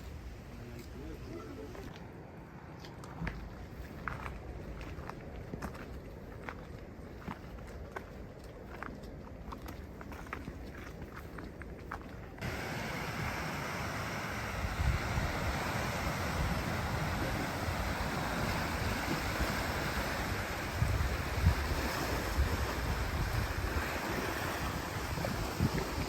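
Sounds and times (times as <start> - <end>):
wind buffeting microphone: 3.1 - 26.0
sea waves washing onto beach: 12.4 - 26.0.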